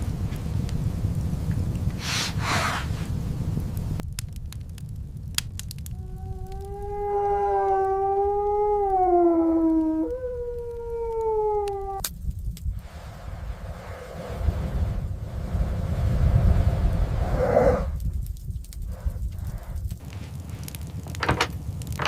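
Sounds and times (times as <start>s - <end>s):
wind hiss rushes: 0.0s - 4.0s, 11.8s - 21.8s
low wind rumble: 0.0s - 22.0s
dog howling: 6.0s - 12.0s.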